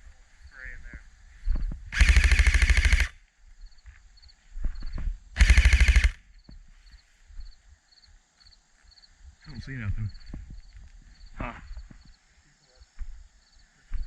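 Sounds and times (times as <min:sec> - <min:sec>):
airsoft rifle firing bursts: 0:01.9 - 0:03.2, 0:05.4 - 0:06.2.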